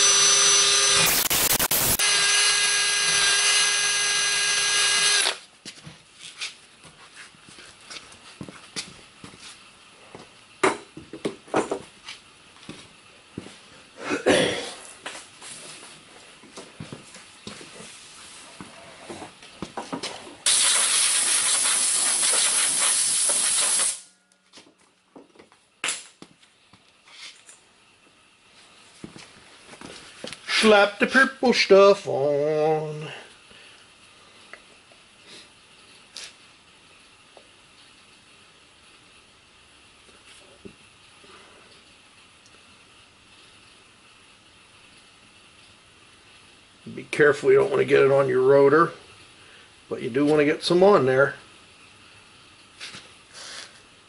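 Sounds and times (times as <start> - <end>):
power tool whining: 0.0 - 5.4
pressurised spray hissing: 1.1 - 2.0, 20.5 - 24.0.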